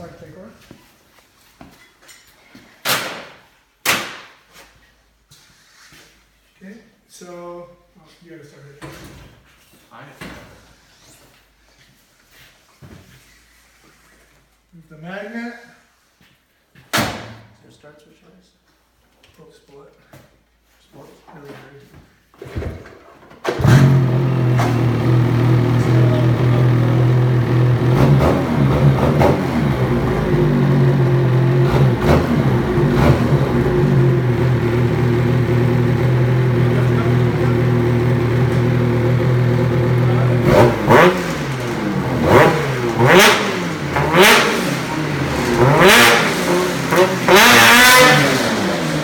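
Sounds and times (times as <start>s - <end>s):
snowmobile engine idling and revving: 23.6s - 49.0s.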